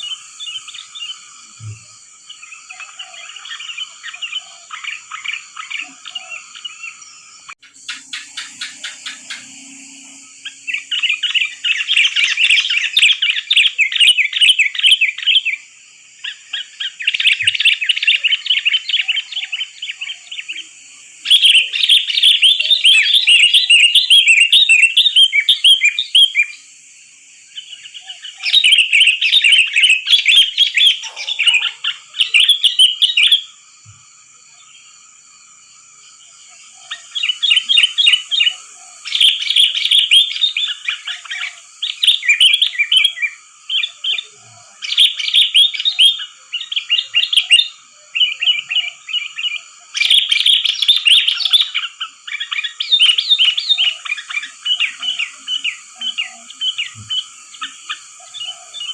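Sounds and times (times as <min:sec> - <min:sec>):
faint high whine: 0:00.0 - 0:49.6
bulbul chirping and warbling: 0:27.6 - 0:33.4.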